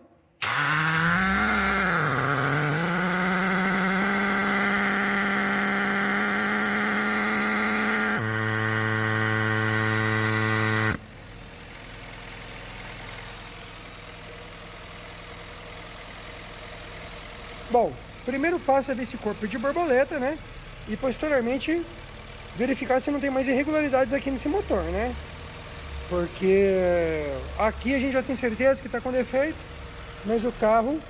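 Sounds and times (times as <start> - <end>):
car engine idling: 0.0 - 31.0
throttle body buzzing whine: 0.2 - 13.6.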